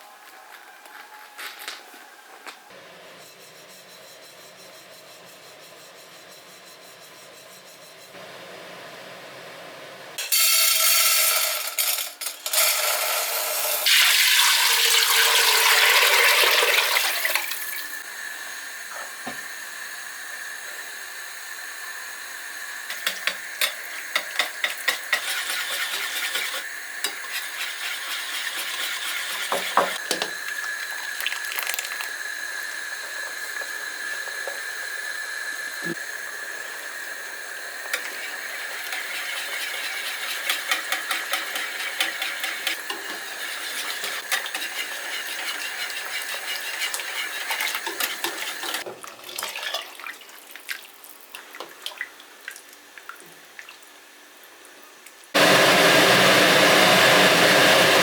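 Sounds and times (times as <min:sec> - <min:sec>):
utensils and dishes clinking: 0:22.9 - 0:30.4, 0:37.9 - 0:49.9.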